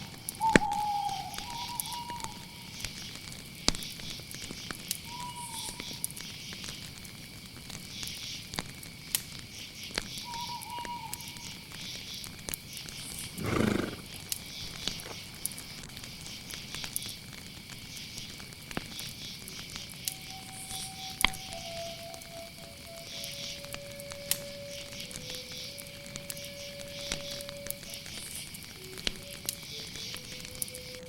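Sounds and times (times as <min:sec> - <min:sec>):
crickets chirring: 0:00.0 - 0:31.0
pulsing insect chorus: 0:00.0 - 0:31.0
wood fire crackling: 0:00.0 - 0:31.0
night bird whistling: 0:00.2 - 0:02.9, 0:05.0 - 0:06.4, 0:09.8 - 0:12.2, 0:13.2 - 0:14.0, 0:20.0 - 0:31.0
loud animal call: 0:13.4 - 0:14.1.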